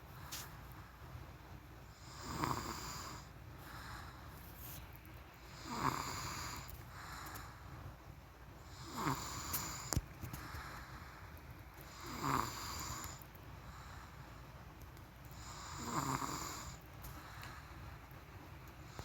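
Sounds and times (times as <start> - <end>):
person snoring: 2.0 - 3.3, 5.6 - 6.7, 8.8 - 9.9, 11.9 - 13.2, 15.4 - 16.8.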